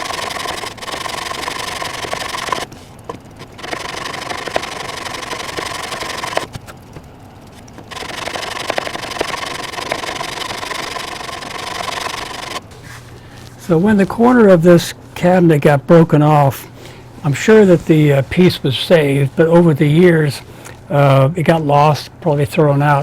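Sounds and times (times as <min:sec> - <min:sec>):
sanding wood: 0:00.0 - 0:06.5, 0:07.9 - 0:14.6.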